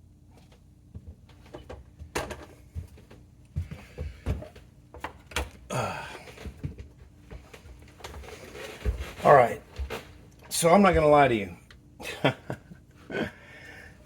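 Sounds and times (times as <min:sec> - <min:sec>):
scraping rustle: 0:07.4 - 0:10.2.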